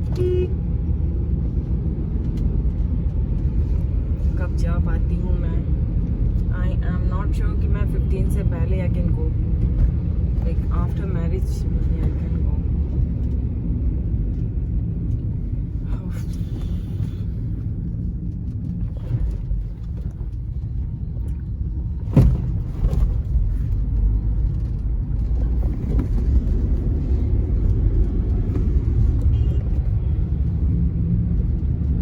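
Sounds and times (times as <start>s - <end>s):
road and engine rumble in car: 0.0s - 32.0s.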